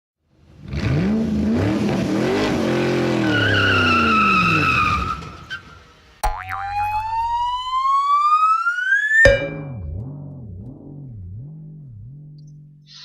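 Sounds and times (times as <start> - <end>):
car engine revving: 0.5 - 4.8
tyre squeal: 3.2 - 5.8.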